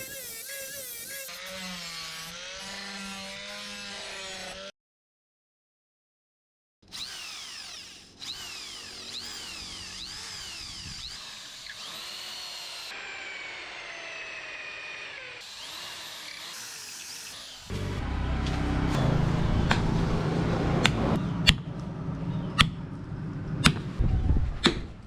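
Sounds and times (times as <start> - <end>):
power tool motor whining: 0.0 - 4.6, 6.9 - 20.2.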